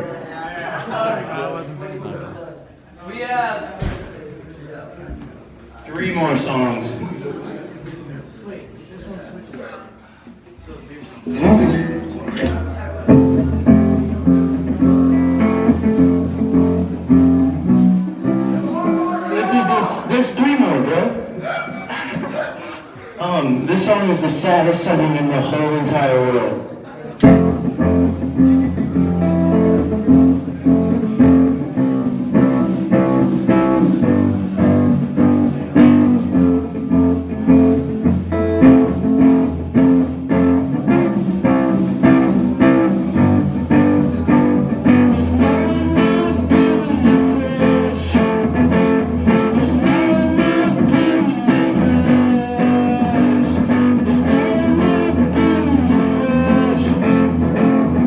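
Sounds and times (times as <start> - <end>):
live band playing slow song: 11.3 - 20.1, 27.2 - 58.0.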